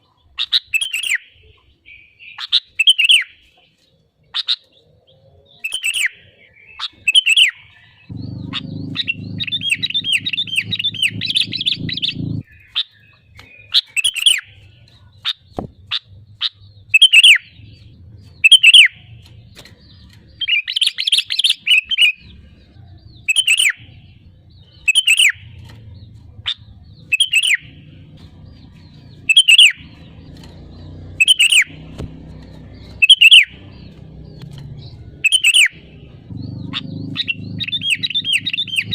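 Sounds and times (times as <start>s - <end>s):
bird calling: 4.4s - 38.9s
bird chattering rapidly: 8.1s - 12.4s, 15.2s - 19.0s, 23.2s - 38.9s
low hum: 8.1s - 12.4s, 22.2s - 38.9s.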